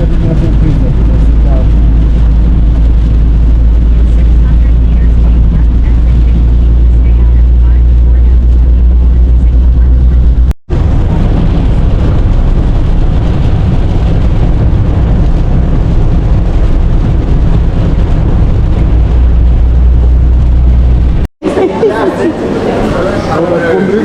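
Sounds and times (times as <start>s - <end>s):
car rumbling on road: 0.0s - 21.6s.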